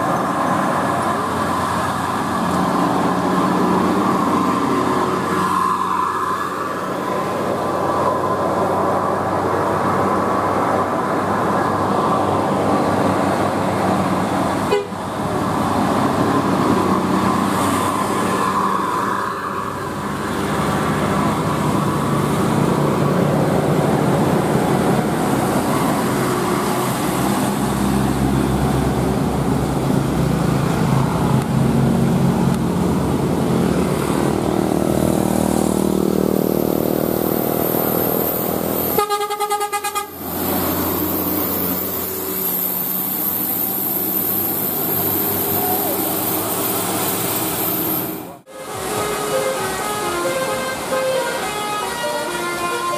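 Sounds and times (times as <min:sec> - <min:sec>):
bus engines: 0:00.0 - 0:52.9
road traffic: 0:00.0 - 0:52.9
multi-tone musical bus horn: 0:14.6 - 0:15.0, 0:38.9 - 0:40.2, 0:48.5 - 0:52.9.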